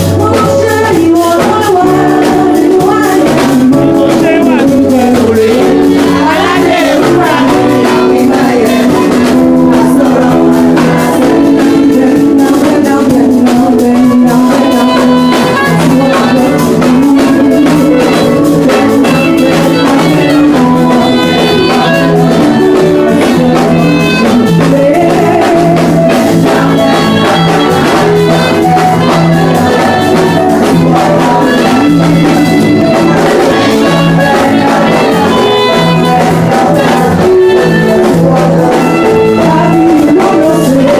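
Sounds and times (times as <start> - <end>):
drum beat: 0.0 - 40.9
live church band music: 0.0 - 40.9
people singing along: 0.0 - 40.9.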